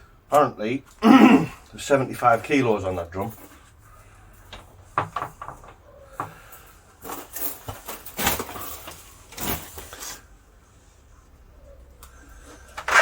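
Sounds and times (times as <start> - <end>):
scraping and knocking handling noises: 4.4 - 10.3.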